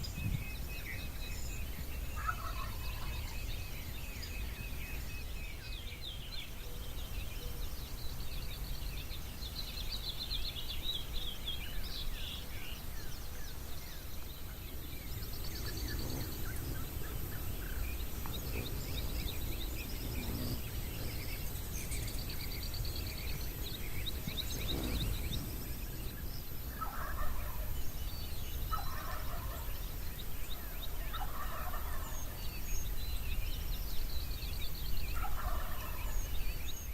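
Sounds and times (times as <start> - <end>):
high bird trills and chirps: 0.0 - 36.9
lower repeated bird calls: 0.0 - 36.9
steady low rumble: 11.8 - 35.4.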